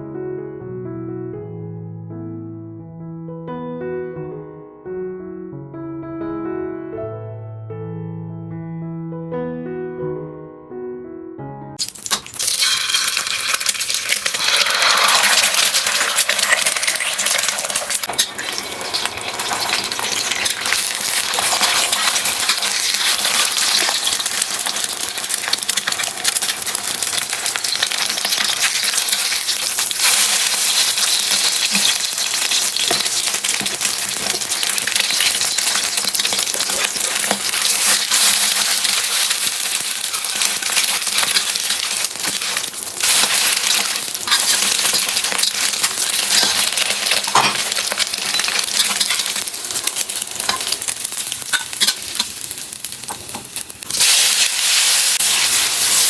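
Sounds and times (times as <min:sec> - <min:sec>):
food sizzling in hot oil: 0:11.8 - 0:56.0.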